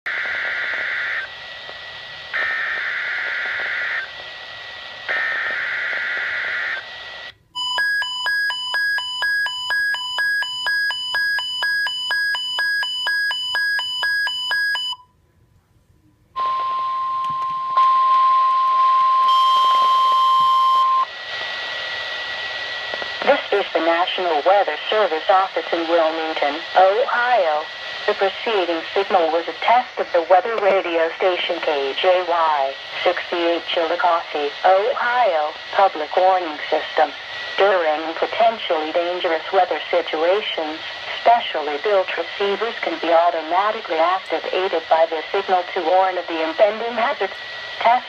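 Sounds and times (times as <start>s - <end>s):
radio hiss: 0.1s - 7.3s, 19.4s - 48.0s
steady beep tone: 7.6s - 15.1s, 16.4s - 21.1s.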